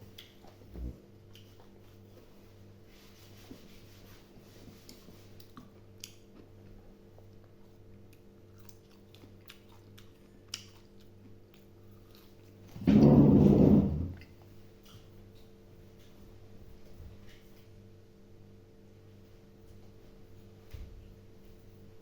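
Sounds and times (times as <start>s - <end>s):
steady low hum: 0.0s - 22.0s
person chewing: 1.3s - 1.9s, 4.8s - 12.6s.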